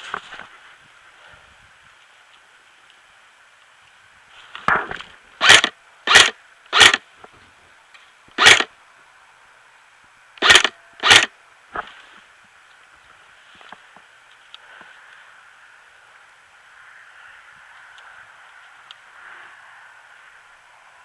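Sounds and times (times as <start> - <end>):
airsoft gun shots: 4.7 - 7.0, 8.4 - 8.7, 10.4 - 11.3.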